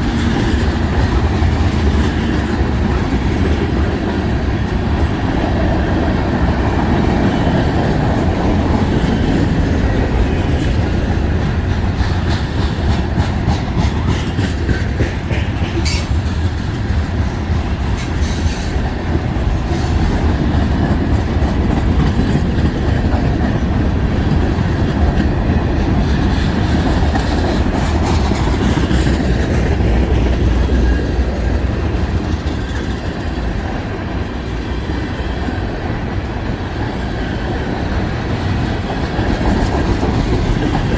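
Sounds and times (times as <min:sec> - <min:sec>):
freight train rolling past: 0:00.0 - 0:40.9
wheels clacking over rail joints: 0:00.0 - 0:40.9.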